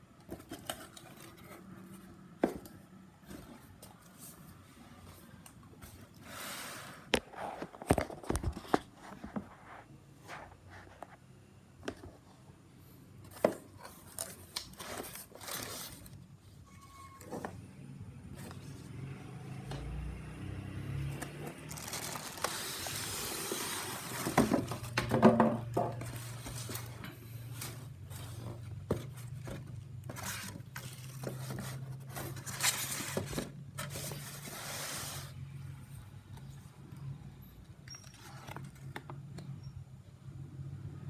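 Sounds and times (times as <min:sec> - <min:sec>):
packaging rustling and scraping: 0:00.2 - 0:11.2, 0:13.2 - 0:17.6, 0:21.1 - 0:35.4, 0:37.9 - 0:39.2
parts clattering: 0:21.1 - 0:34.4.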